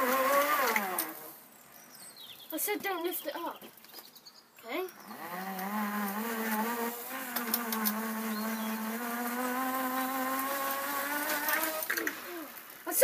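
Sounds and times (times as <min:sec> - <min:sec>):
small electric motor whining: 0:00.0 - 0:01.4, 0:04.9 - 0:12.7.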